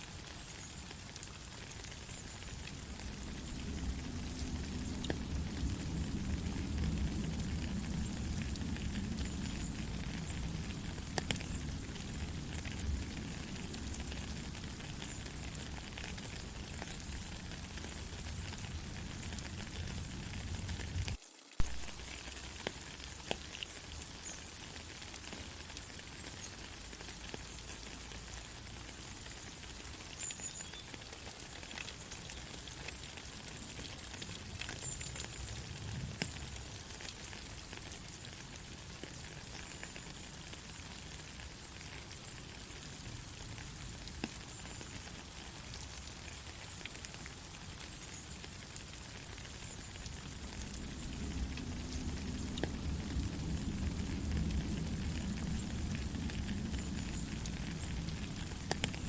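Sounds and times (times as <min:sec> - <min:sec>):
rain falling: 0:00.0 - 0:59.0
low rumble: 0:50.2 - 0:59.0.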